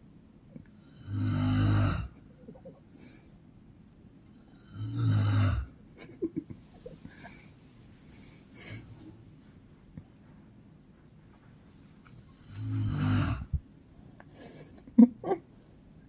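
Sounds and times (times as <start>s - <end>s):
quiet breathing: 0.6s - 3.6s, 4.2s - 10.5s, 11.3s - 16.0s
woman snoring: 0.8s - 2.2s, 4.6s - 5.8s, 12.4s - 13.6s.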